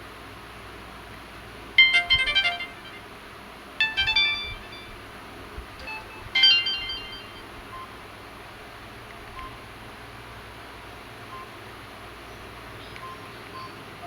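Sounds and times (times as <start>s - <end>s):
faint keypad beeps: 1.8s - 3.0s, 3.8s - 5.0s, 5.8s - 8.0s, 11.3s - 11.6s, 13.0s - 13.8s
mobile phone chime: 1.8s - 3.0s, 3.8s - 5.0s, 5.8s - 7.5s.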